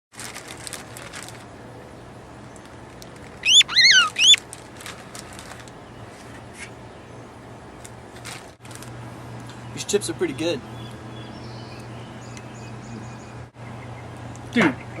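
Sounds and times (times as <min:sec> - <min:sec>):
bird chirping: 0:03.4 - 0:04.4, 0:10.8 - 0:14.1.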